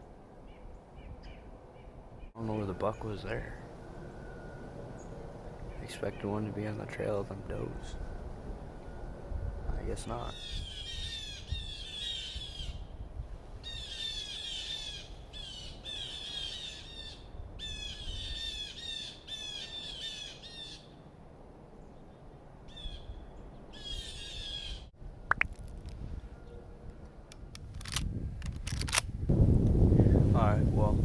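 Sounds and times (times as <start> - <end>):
bird calling in harsh notes: 0.5 - 13.0, 13.6 - 21.0, 22.7 - 24.9.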